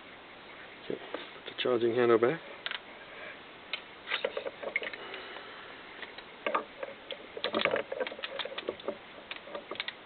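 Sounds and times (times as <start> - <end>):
metal rifle parts clicking: 2.6 - 2.8, 4.1 - 5.1, 6.0 - 10.0.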